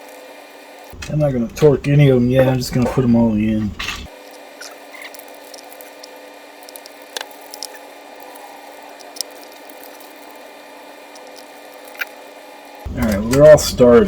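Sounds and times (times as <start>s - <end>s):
low hum: 0.8s - 4.1s.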